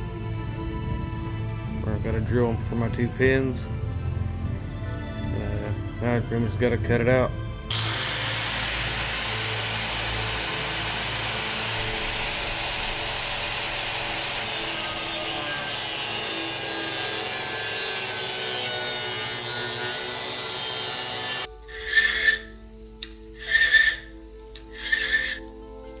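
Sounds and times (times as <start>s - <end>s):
power tool cutting steel: 7.7s - 25.4s.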